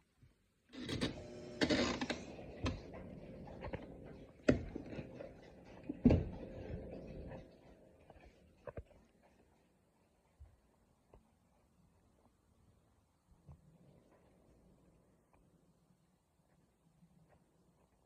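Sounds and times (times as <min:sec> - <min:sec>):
dishwasher whirring and humming: 0:00.8 - 0:08.0
dishwasher knocks and clatters: 0:05.9 - 0:06.9.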